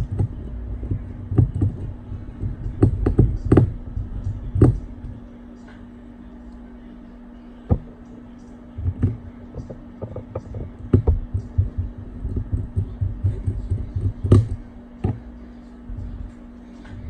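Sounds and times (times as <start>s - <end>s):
steady low hum: 0.0s - 17.0s
hand tools clicking and tapping: 7.7s - 15.2s.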